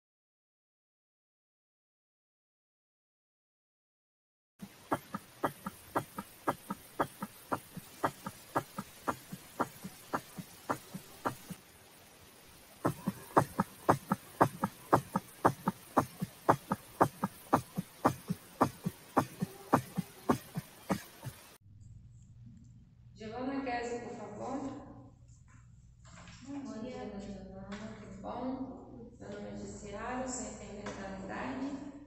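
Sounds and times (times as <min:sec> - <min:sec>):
lub-dub heartbeat: 0:04.6 - 0:11.6, 0:12.8 - 0:21.5.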